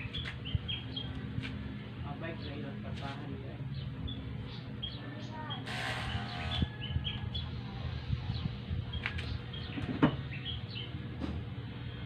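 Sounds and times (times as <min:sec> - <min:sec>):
small birds chirping: 0:00.0 - 0:02.8, 0:03.4 - 0:11.1.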